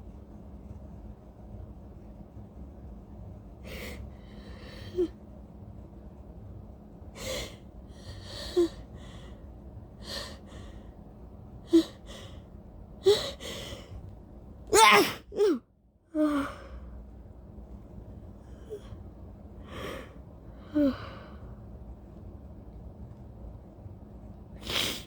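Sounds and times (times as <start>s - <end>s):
woman sneezing: 14.7s - 15.6s
woman sniffing: 24.6s - 25.0s.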